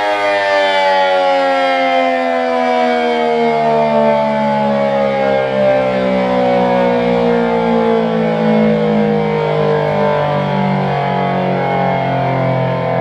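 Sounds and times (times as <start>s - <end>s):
warning siren wailing: 0.0s - 13.0s.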